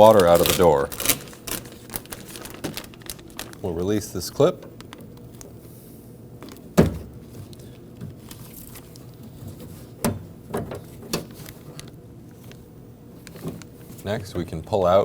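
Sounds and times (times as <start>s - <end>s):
clicks and knocks in a car door: 6.7s - 7.2s, 9.6s - 11.4s.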